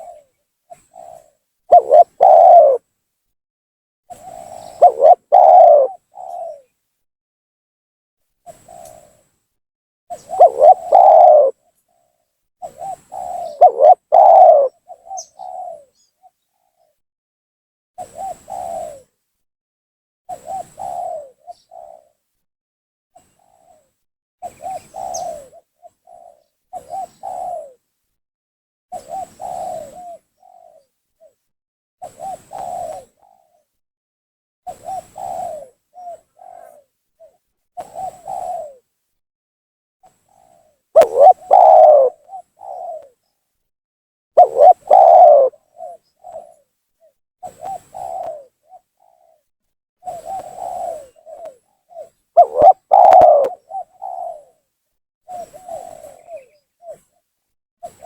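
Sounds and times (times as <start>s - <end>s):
dove cooing: 0.0s - 2.8s, 4.2s - 6.7s, 10.1s - 11.6s, 12.6s - 16.0s, 18.0s - 19.1s, 20.3s - 22.1s, 24.4s - 27.8s, 29.0s - 31.3s, 32.0s - 33.6s, 34.7s - 38.9s, 41.0s - 43.2s, 44.4s - 46.6s, 47.4s - 49.4s, 50.0s - 54.6s, 55.3s - 57.1s.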